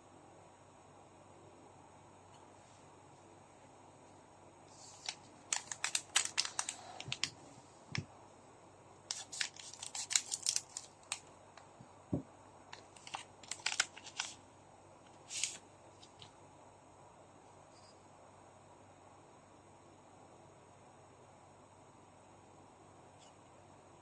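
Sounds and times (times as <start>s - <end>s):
foil wrappers crinkling and tearing: 4.9s - 7.3s, 9.1s - 11.2s, 12.8s - 14.4s
cards clicking and snapping: 5.0s - 7.3s, 12.8s - 14.4s.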